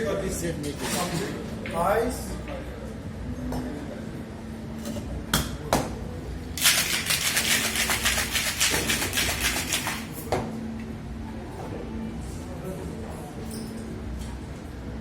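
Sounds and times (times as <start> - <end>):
ice rattling in cocktail shaker: 6.6 - 10.2.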